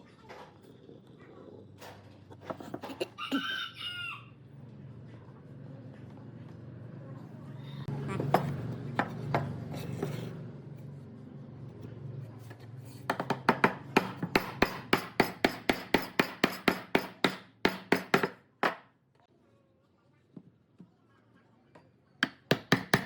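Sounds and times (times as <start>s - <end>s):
hammer striking wood: 13.1s - 18.9s, 22.2s - 23.0s.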